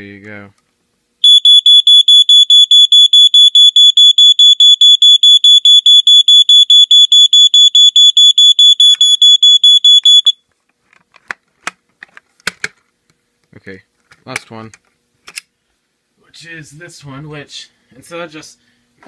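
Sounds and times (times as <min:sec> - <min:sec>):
smoke alarm beeping: 0:01.2 - 0:10.4.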